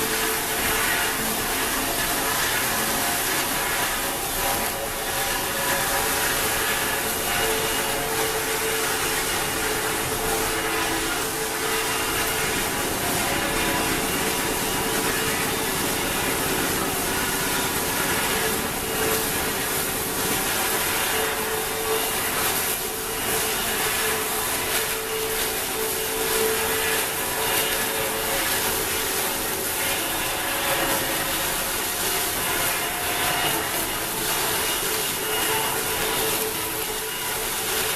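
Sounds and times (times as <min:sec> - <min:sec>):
woodworking machine running: 0:00.0 - 0:37.9.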